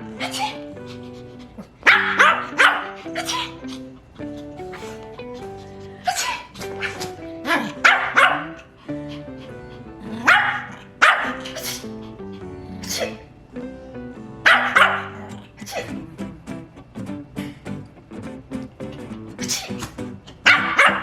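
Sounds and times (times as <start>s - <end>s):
background music: 0.0s - 21.0s
small dog yapping: 1.6s - 3.9s, 4.7s - 8.6s, 10.2s - 11.9s, 14.5s - 15.9s, 19.4s - 21.0s.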